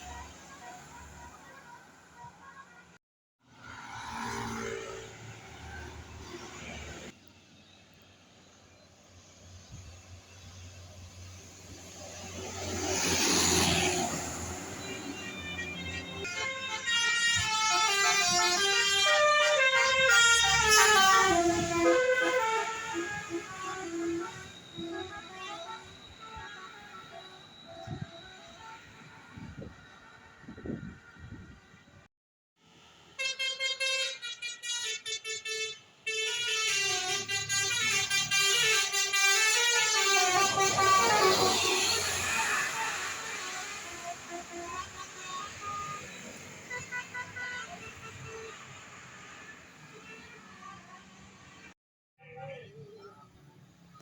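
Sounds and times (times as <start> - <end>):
multi-tone air horn melody: 14.7 - 31.5, 33.1 - 51.2.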